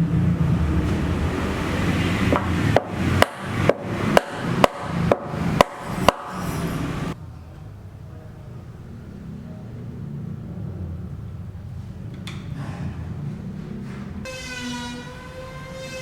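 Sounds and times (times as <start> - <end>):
sharp clicking beat: 2.3 - 6.4.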